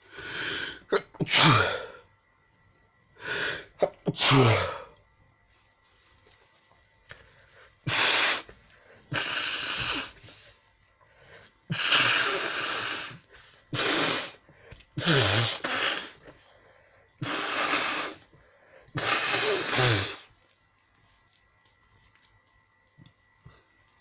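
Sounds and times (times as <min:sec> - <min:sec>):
person sneezing: 0:00.5 - 0:02.0, 0:03.2 - 0:05.0, 0:07.9 - 0:08.5, 0:11.7 - 0:14.4, 0:15.0 - 0:16.2, 0:19.0 - 0:20.3.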